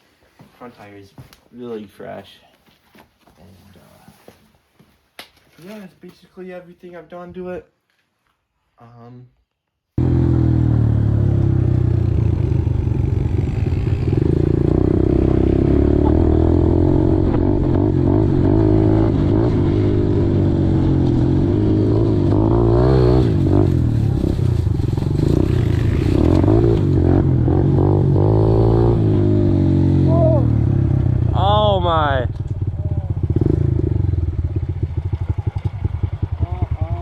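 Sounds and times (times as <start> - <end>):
dirt bike engine revving: 10.0 - 37.0.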